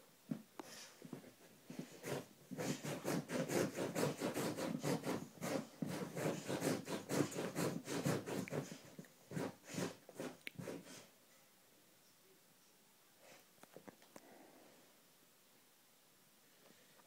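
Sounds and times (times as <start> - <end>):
puppy paws scratching fabric: 0.7 - 11.1.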